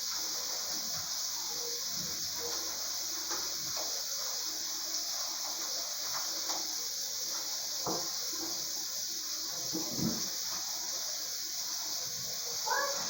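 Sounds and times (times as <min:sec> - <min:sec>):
shower spray running: 0:00.0 - 0:13.0.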